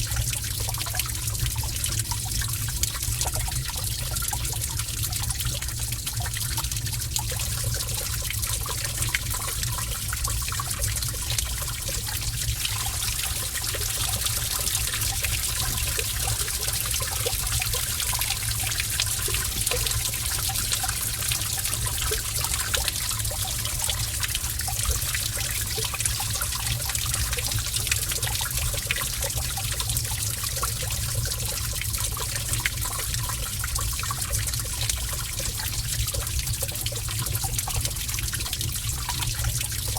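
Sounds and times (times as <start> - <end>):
water drips and splashes: 0.0 - 39.9
water trickling: 0.0 - 39.9.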